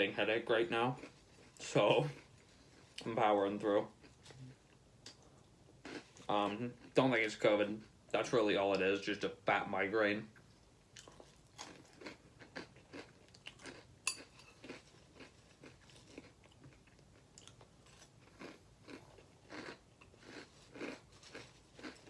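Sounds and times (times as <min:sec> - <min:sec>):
person chewing crunchy cereal: 0:03.8 - 0:07.0, 0:10.9 - 0:22.0.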